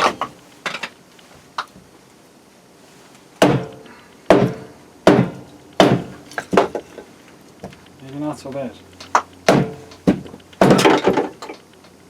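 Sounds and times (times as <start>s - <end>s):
axe chopping wood: 3.4s - 6.8s, 9.1s - 11.3s.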